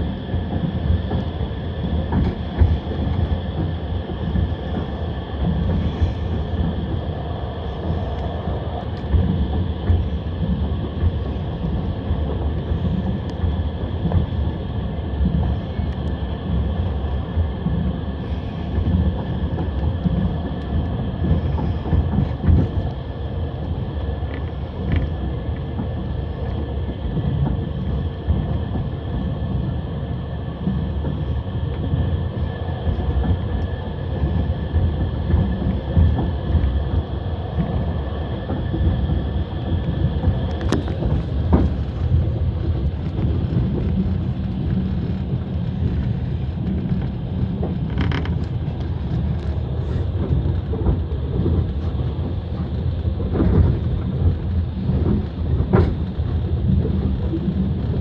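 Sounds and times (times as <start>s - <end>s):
train rumble inside carriage: 0.0s - 58.0s
train wheels knocking: 32.9s - 58.0s.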